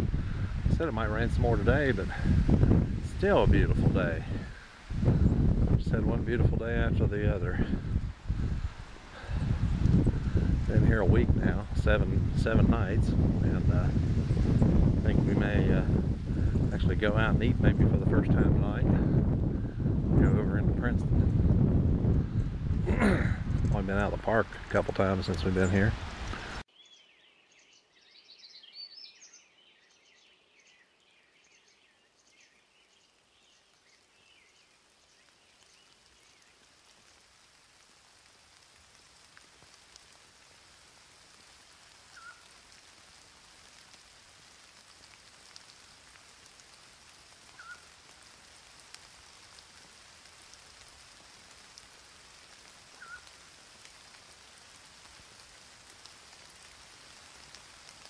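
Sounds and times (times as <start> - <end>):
faint rain falling: 0.0 - 26.8, 27.9 - 58.0
birds chirping: 22.9 - 36.8, 42.1 - 42.5, 47.5 - 48.0, 52.9 - 53.4.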